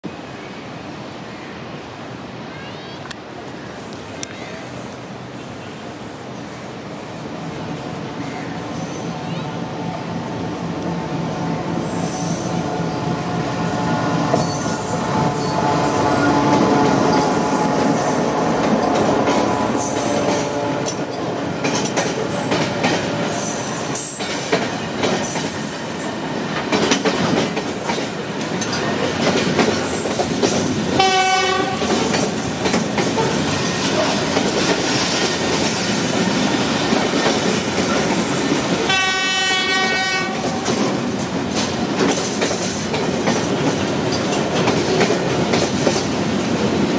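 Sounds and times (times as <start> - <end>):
train wheel clatter: 13.7 - 46.9
train horn blast: 20.0 - 21.2, 31.0 - 32.0, 38.9 - 40.8.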